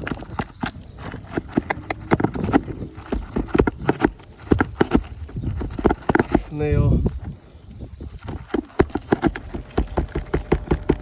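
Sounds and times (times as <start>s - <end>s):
pry bar knocking and scraping: 8.2s - 11.0s.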